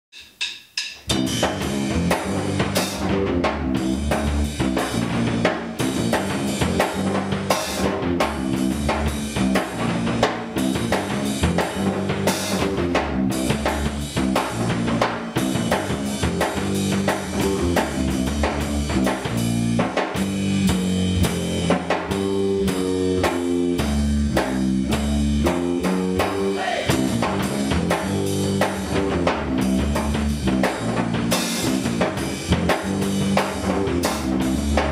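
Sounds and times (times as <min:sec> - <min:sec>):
drum kit beat: 0:00.1 - 0:34.9
guitar riff: 0:01.1 - 0:34.9.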